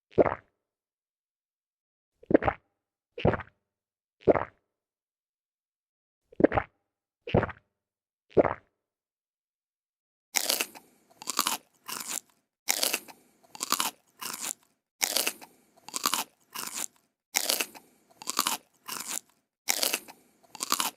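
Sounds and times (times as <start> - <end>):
crisp crunching: 10.4 - 20.9.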